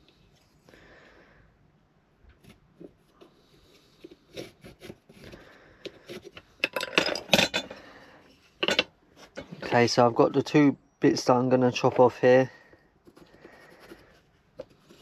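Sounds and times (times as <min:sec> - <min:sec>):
wooden pieces and tools knocking: 0:06.1 - 0:07.8, 0:08.6 - 0:09.8.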